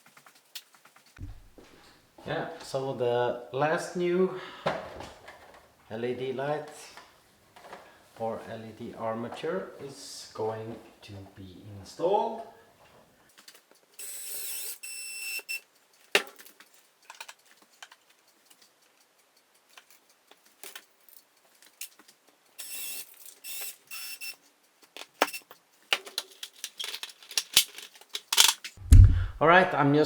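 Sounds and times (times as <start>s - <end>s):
clicks and knocks of parts handled: 4.6s - 5.7s, 6.7s - 7.9s, 13.3s - 13.9s, 15.8s - 23.8s, 24.5s - 28.8s
cordless drill whining: 22.6s - 24.4s.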